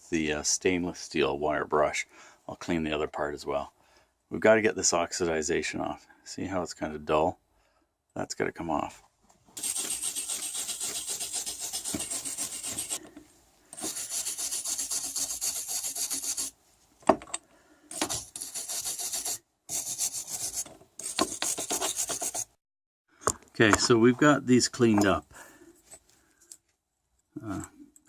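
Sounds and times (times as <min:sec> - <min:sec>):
wire brush scrubbing metal: 0:09.6 - 0:13.0, 0:13.8 - 0:16.5, 0:17.9 - 0:22.5.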